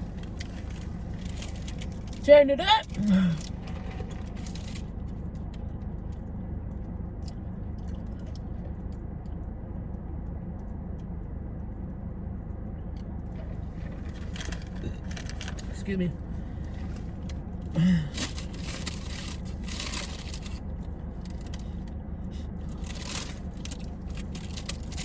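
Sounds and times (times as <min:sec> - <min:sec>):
car engine humming: 0:00.0 - 0:25.0
chewing clicks: 0:03.5 - 0:10.0.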